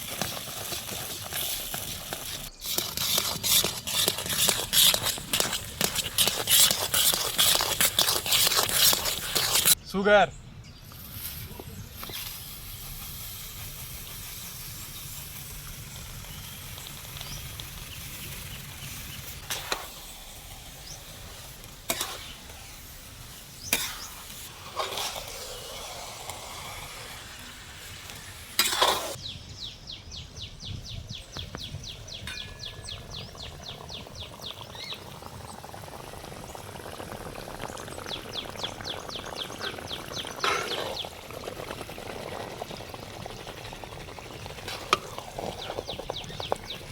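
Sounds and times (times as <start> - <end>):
food sizzling in a pan: 0.0 - 9.8, 11.0 - 29.2, 32.3 - 46.9
spatula scraping pan: 0.0 - 9.8, 18.8 - 29.2, 39.4 - 41.2, 44.6 - 46.4.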